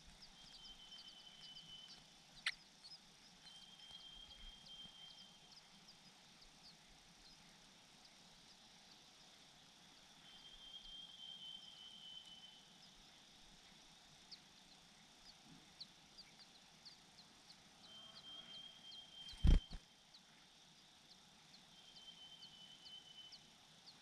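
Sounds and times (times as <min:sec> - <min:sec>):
steady high buzz: 0:19.2 - 0:19.8.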